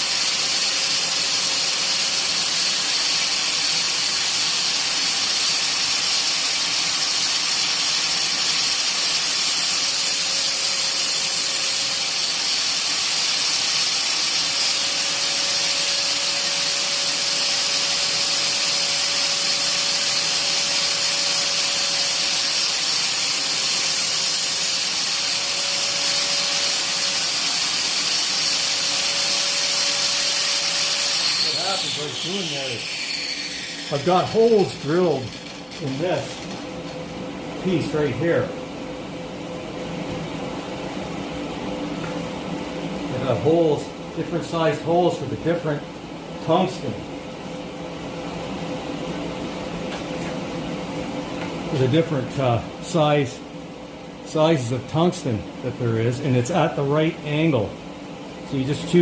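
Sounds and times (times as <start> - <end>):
grinder hissing: 0.0 - 37.0.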